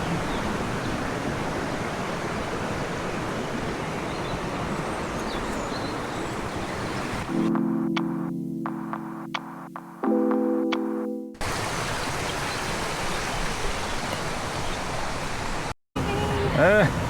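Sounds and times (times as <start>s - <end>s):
wind: 0.0s - 9.6s, 11.4s - 17.0s
sea waves rushing: 0.0s - 10.0s, 10.7s - 17.0s
keyboard music: 7.2s - 11.5s.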